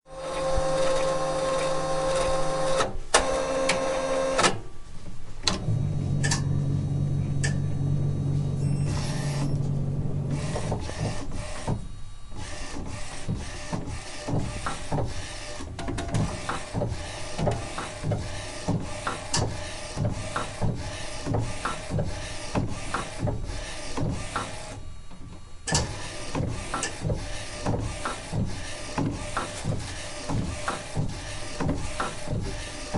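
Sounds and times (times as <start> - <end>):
printer humming: 0.1 - 4.6, 5.4 - 32.9
printer motor whine: 0.1 - 4.6, 5.4 - 32.9
printer clicking: 25.7 - 32.9.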